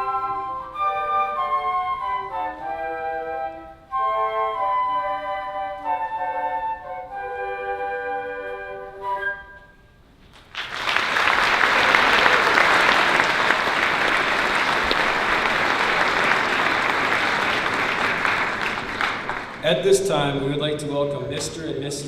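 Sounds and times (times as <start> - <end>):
flute melody: 0.0 - 10.1
large audience applause: 10.4 - 20.0.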